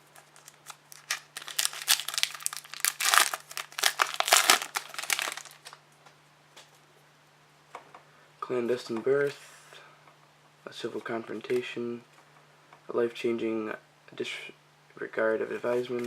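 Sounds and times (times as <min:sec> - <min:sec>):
wrapper torn open and crinkled: 0:00.0 - 0:05.8.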